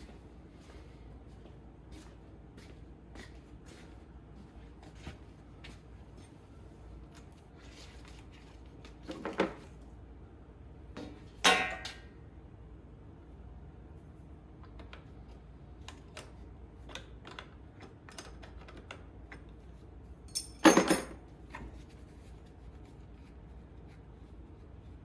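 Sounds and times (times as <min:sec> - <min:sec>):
hand tools clicking and tapping: 0:20.3 - 0:21.2
metal parts clattering: 0:20.3 - 0:21.2.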